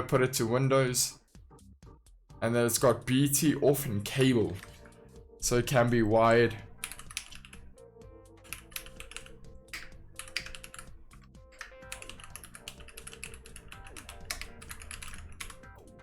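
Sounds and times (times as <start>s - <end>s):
quiet background music: 0.0s - 16.0s
mechanical keyboard typing: 6.8s - 7.6s, 8.4s - 10.9s, 11.5s - 15.8s.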